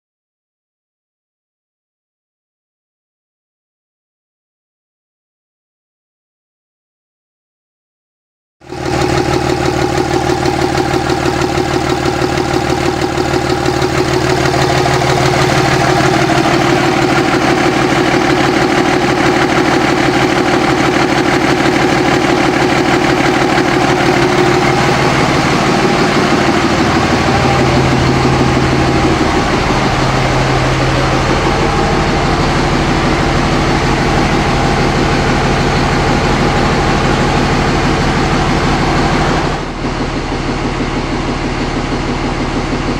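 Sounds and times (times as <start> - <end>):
diesel engine idling: 8.7 - 42.9.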